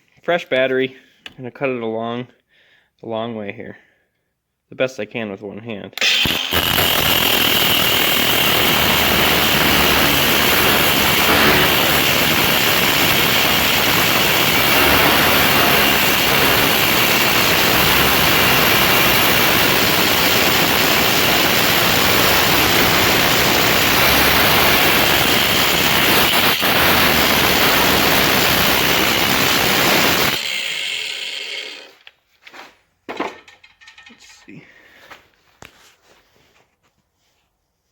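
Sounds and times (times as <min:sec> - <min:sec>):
cutting tool grinding brass: 0:06.0 - 0:31.9
tool spinning down: 0:06.0 - 0:32.1.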